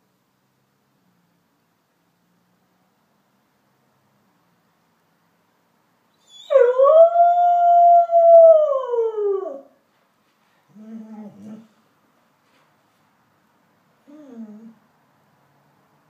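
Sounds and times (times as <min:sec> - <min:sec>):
dog howling: 0:06.2 - 0:09.7.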